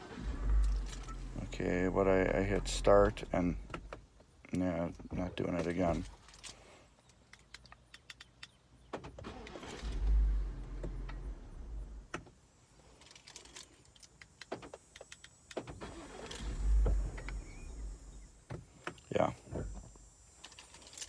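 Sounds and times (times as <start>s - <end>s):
low engine rumble: 0.0s - 4.0s, 15.9s - 18.5s
sharp clicks in car cabin: 3.5s - 4.3s.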